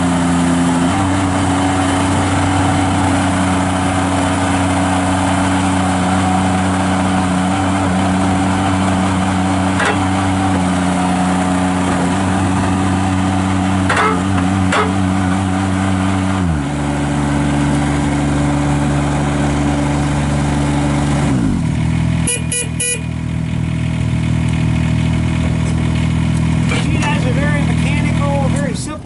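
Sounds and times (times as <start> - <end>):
diesel engine running hard: 0.0 - 29.0
short beeps: 22.3 - 23.1.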